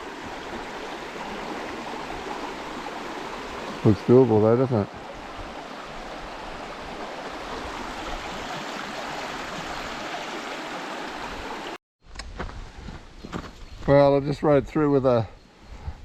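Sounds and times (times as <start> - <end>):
river rushing over rocks: 0.0 - 11.8.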